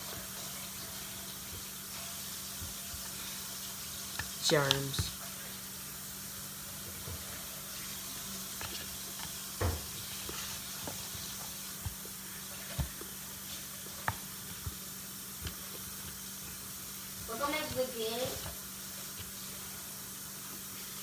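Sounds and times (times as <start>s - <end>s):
tap running: 0.0s - 5.6s, 6.7s - 21.0s.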